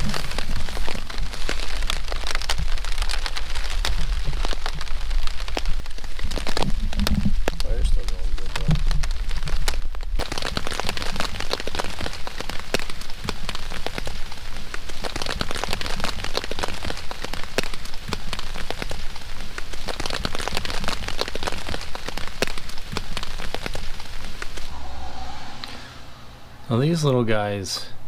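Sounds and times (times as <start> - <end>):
steady rain with drop hits: 0.0 - 24.8.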